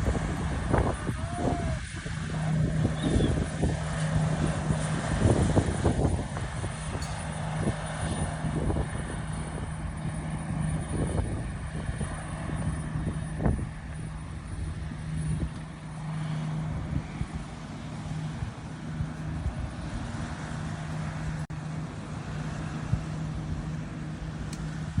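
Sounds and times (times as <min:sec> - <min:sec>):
boat engine humming: 0:00.0 - 0:25.0.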